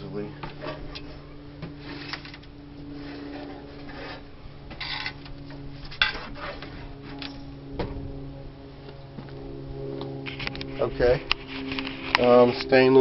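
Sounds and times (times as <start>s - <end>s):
steady low hum: 0.0s - 13.0s
metal shell scraping: 4.8s - 5.2s.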